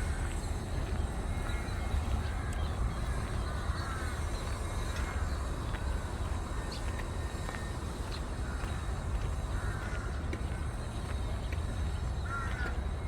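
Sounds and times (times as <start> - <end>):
crow cawing: 9.4 - 10.2, 12.2 - 12.8.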